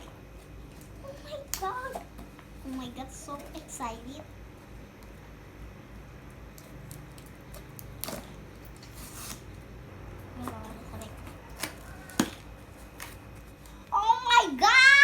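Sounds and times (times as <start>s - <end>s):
cardboard packaging clicks and snaps: 6.5s - 9.6s, 11.0s - 13.8s
packaging tearing rip: 6.8s - 9.6s.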